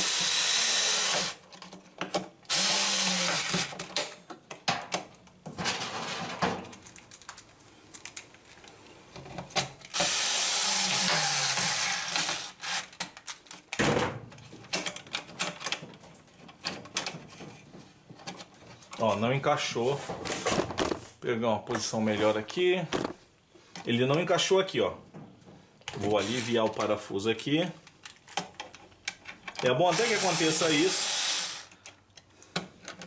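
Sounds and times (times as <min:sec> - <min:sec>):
cordless screwdriver running: 0:00.0 - 0:01.4, 0:02.5 - 0:03.7, 0:09.9 - 0:12.9, 0:26.2 - 0:26.6, 0:29.9 - 0:31.7
clicks and knocks of parts: 0:01.4 - 0:02.5, 0:03.4 - 0:10.1, 0:11.6 - 0:19.2, 0:27.8 - 0:29.8, 0:31.7 - 0:33.0.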